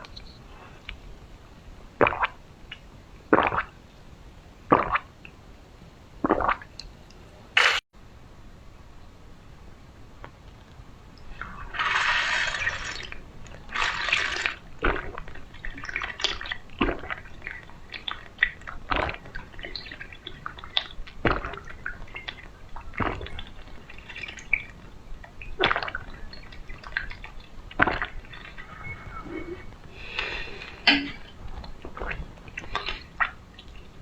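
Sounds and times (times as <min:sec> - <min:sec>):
person gulping: 0:27.7 - 0:33.4
person sipping: 0:27.8 - 0:33.1.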